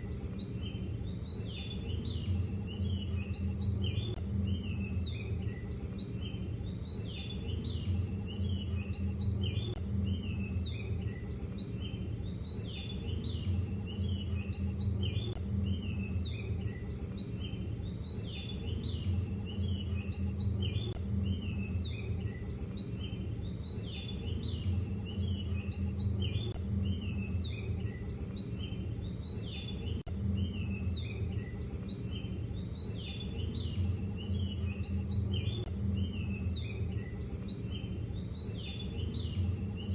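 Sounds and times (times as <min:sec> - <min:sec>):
birds chirping: 0:00.0 - 0:39.9
low steady hum: 0:00.0 - 0:39.9.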